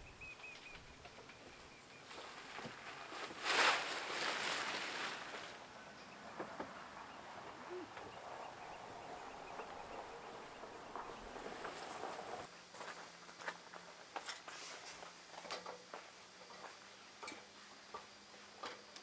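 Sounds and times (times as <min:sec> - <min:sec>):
boat cover rustling: 0:02.0 - 0:07.5, 0:08.1 - 0:12.5.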